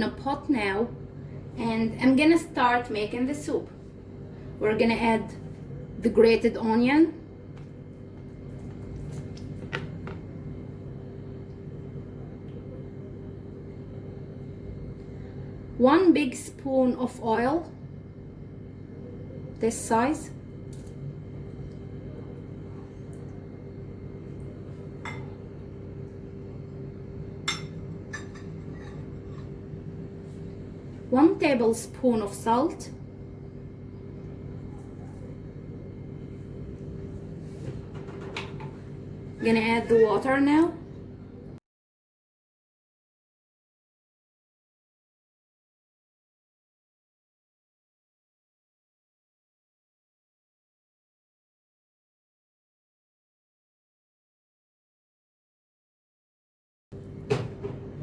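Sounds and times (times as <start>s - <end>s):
steady low hum: 0.0s - 41.6s.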